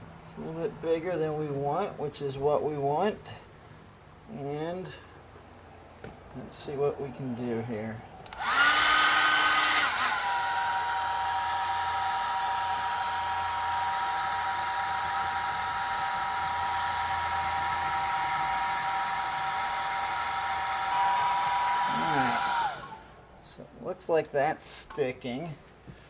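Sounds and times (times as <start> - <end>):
hair dryer blowing: 8.3 - 23.1.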